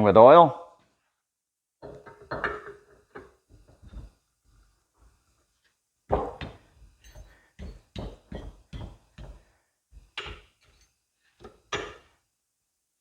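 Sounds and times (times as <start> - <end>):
knocks of metal parts being fitted: 11.4 - 12.1.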